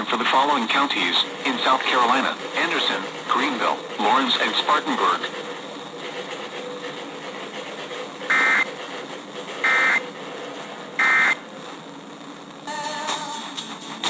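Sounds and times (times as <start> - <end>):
faint radio static: 0.0 - 14.0
data tone bursts: 8.3 - 8.7, 9.6 - 10.0, 11.0 - 11.4.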